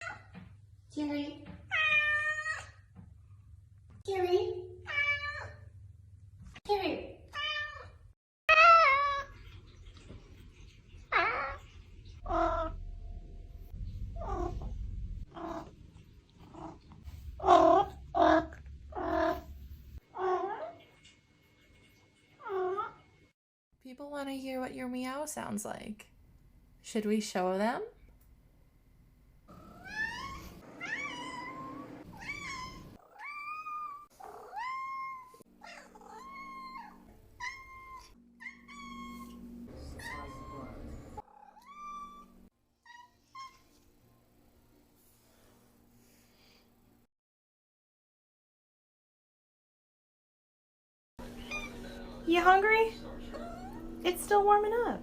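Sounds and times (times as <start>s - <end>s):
cat meowing: 29.5s - 43.8s, 51.4s - 51.9s, 53.3s - 54.0s.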